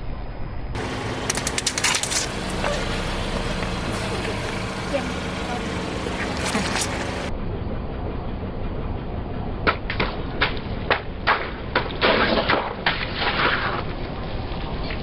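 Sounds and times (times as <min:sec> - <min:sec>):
low car engine rumble: 0:00.7 - 0:12.0.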